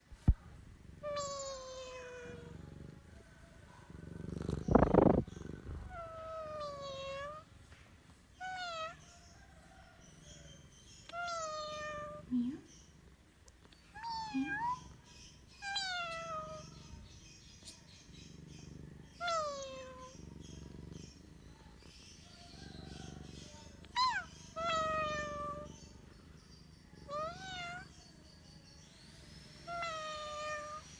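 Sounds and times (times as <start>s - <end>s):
cat meowing: 1.0s - 2.7s, 4.4s - 7.5s, 8.4s - 9.2s, 11.1s - 12.3s, 14.0s - 15.0s, 15.6s - 16.9s, 19.2s - 20.2s, 22.7s - 25.9s, 27.0s - 28.0s, 29.7s - 30.9s.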